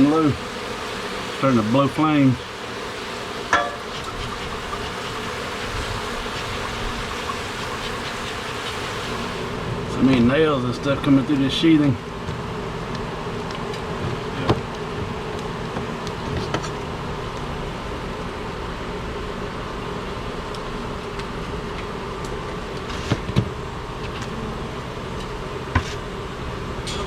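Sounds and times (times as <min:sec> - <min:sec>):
bees buzzing: 0:00.0 - 0:10.0.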